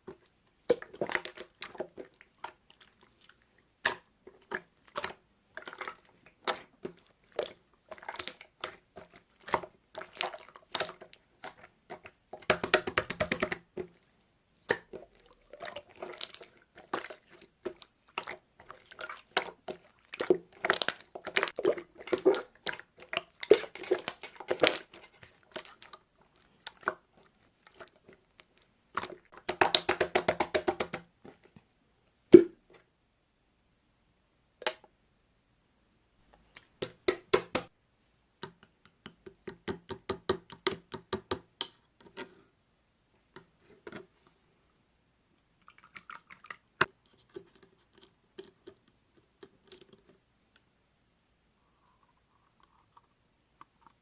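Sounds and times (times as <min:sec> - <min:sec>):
slime squishing with wet clicks: 0:00.0 - 0:31.1.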